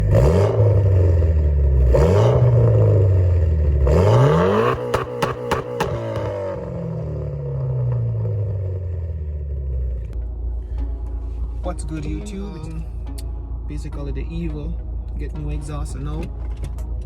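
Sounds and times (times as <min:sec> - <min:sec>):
car engine revving hard: 0:00.0 - 0:10.1
exhaust pops: 0:00.0 - 0:10.2.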